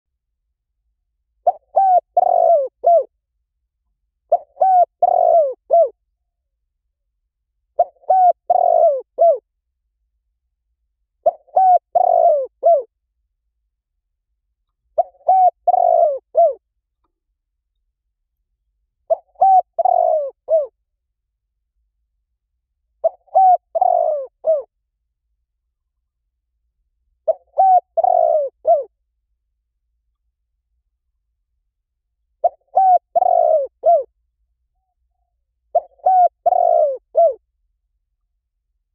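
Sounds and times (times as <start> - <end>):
dove cooing: 1.4 - 3.1, 4.3 - 6.0, 7.8 - 9.4, 11.2 - 12.9, 15.0 - 16.6, 19.1 - 20.8, 23.0 - 24.7, 27.2 - 28.9, 32.4 - 34.1, 35.7 - 37.4.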